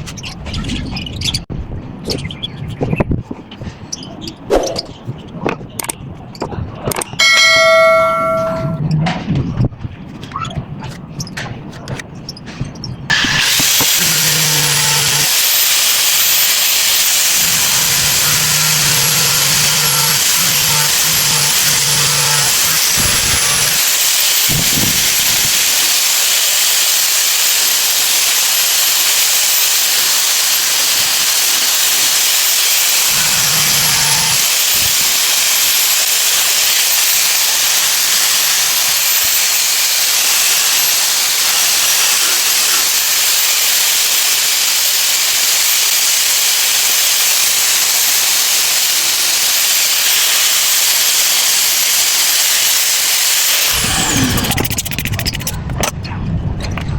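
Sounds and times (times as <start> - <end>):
loud hissing noise: 7.2 - 8.8, 13.1 - 56.0.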